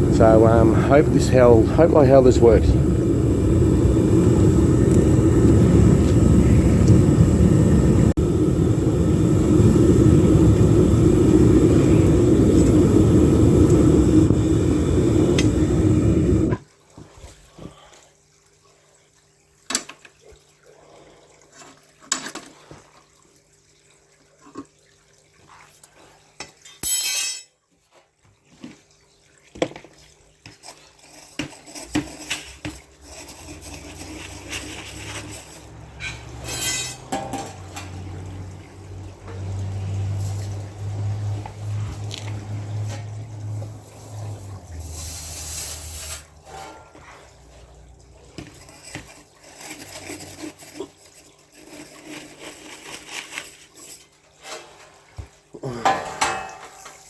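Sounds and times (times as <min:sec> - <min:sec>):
furnace burner roaring: 0:00.0 - 0:16.6, 0:31.1 - 0:57.0
knocks and clinks: 0:26.8 - 0:27.5
short hiss: 0:44.8 - 0:46.3.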